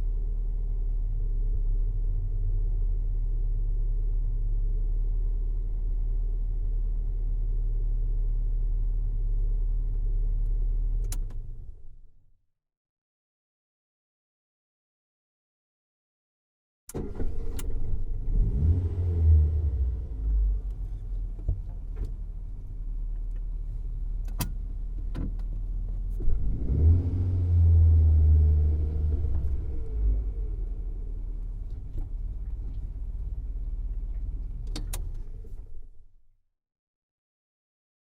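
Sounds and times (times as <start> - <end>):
car engine running: 28.4 - 35.8.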